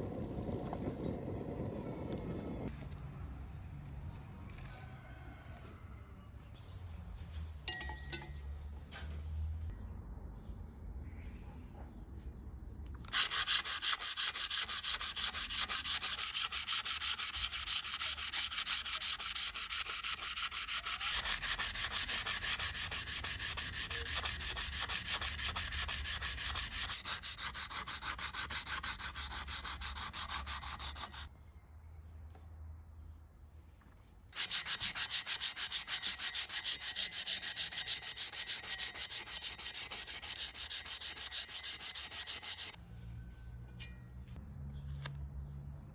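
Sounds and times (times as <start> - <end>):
abrasive rubbing on steel: 34.4 - 42.8.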